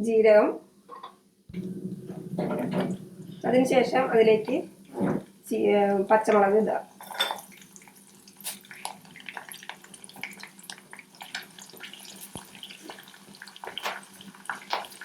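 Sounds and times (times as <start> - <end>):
chillies frying in oil: 5.4 - 15.0.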